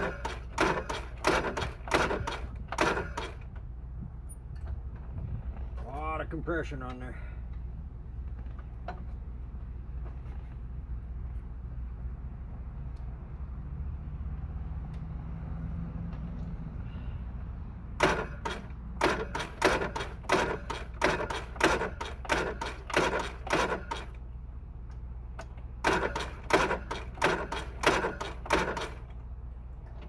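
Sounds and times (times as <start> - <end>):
engine cranking without firing: 0.0 - 3.8, 17.9 - 24.3, 25.3 - 30.0.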